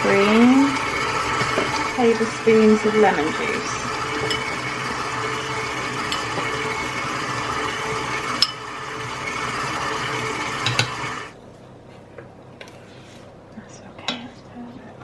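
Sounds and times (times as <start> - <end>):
electric mixer beating batter: 0.0 - 11.3
mixer clicking against bowl: 10.6 - 11.2.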